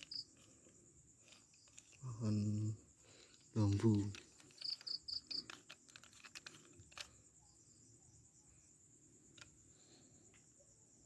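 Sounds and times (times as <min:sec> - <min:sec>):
night insects trilling: 0:00.0 - 0:11.0.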